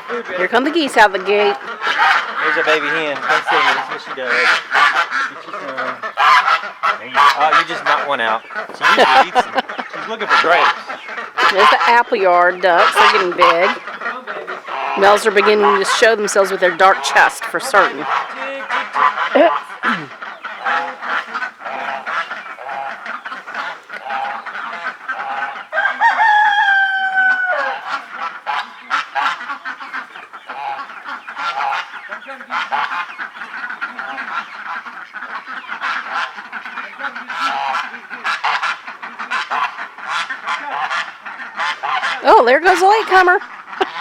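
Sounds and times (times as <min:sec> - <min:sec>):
geese ducks and chickens calling: 0:00.0 - 0:44.0
rooster crowing: 0:25.7 - 0:27.9.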